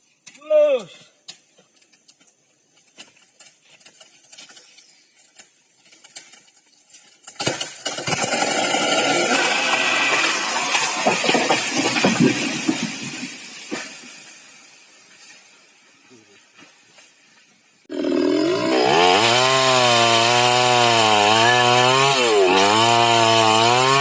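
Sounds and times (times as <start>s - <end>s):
power tool working on timber: 17.9s - 24.0s.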